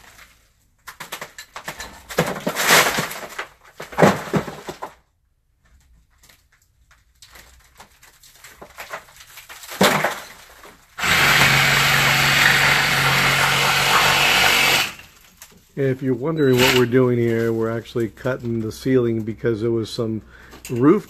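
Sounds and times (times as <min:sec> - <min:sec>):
drywall crunching and breaking: 0:00.0 - 0:15.7
power tool cutting drywall: 0:11.0 - 0:15.2.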